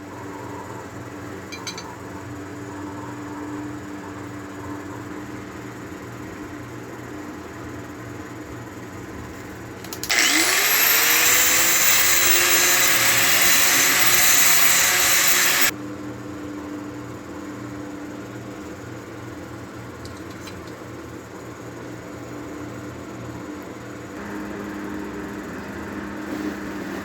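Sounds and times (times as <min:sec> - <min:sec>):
electric power tool motor whine: 0:10.0 - 0:15.7.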